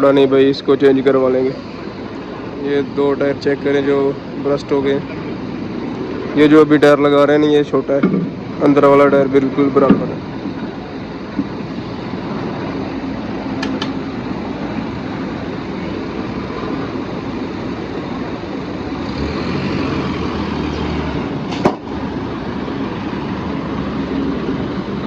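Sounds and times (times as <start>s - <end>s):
vehicle engine and traffic noise: 0.0s - 25.0s
vehicle passing: 17.8s - 25.0s.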